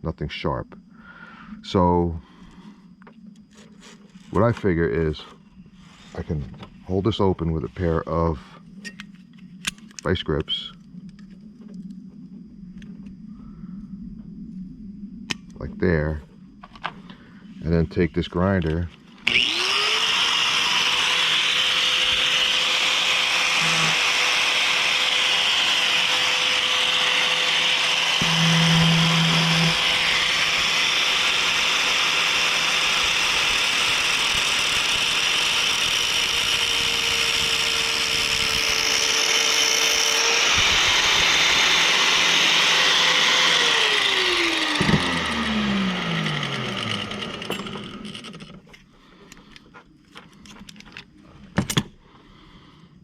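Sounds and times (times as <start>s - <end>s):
grinder motor winding down: 18.6s - 48.7s
grinder cutting metal cable: 18.7s - 48.7s.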